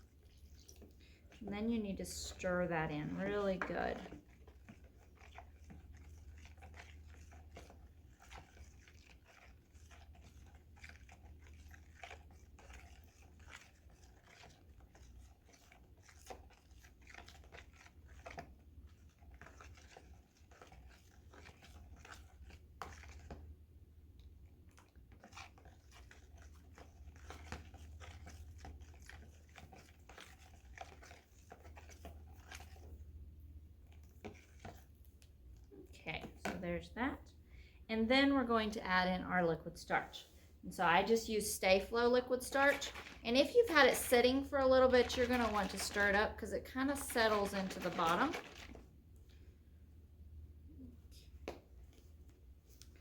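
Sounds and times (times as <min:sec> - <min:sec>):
utensil stirring in a bowl: 0:00.0 - 0:36.6, 0:40.8 - 0:49.5.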